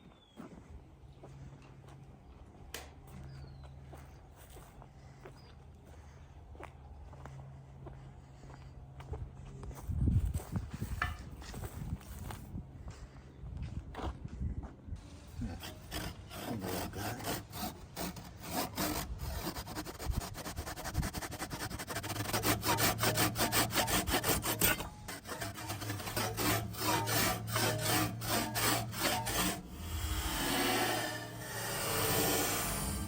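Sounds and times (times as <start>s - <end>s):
hand saw cutting wood: 15.3s - 33.0s.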